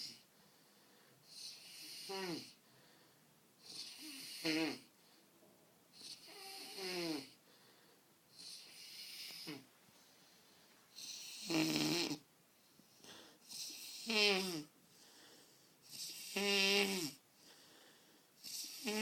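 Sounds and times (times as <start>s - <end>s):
man snoring heavily: 6.2s - 7.3s, 11.0s - 12.2s, 18.4s - 19.0s.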